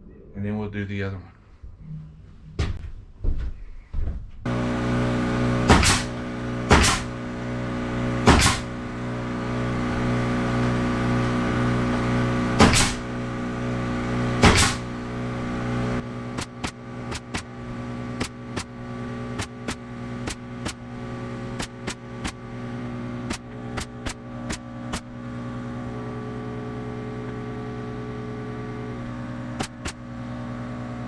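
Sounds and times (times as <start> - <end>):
air compressor motor humming: 4.5 - 31.0
nail gun firing: 5.6 - 7.2, 8.2 - 8.8, 12.6 - 13.2, 14.4 - 15.0, 16.4 - 17.6, 18.2 - 20.9, 21.6 - 22.4, 23.3 - 25.1, 29.6 - 30.0.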